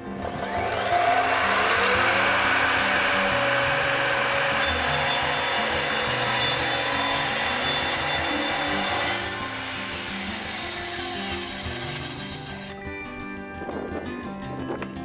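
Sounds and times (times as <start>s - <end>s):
miter saw cutting: 0.0s - 12.8s.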